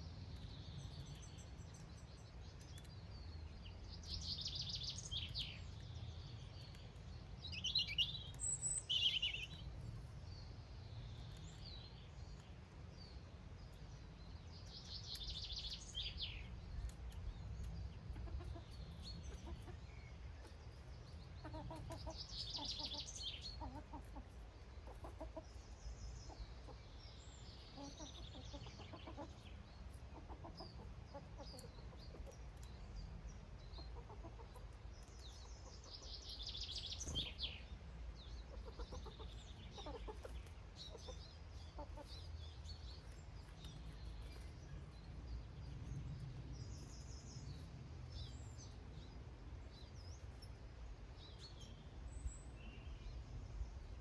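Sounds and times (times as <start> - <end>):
small birds chirping: 0.0 - 54.0
hens clucking: 18.1 - 19.8, 21.3 - 25.6, 27.7 - 32.6, 33.8 - 34.9, 38.4 - 42.2
low background rumble: 25.4 - 53.8.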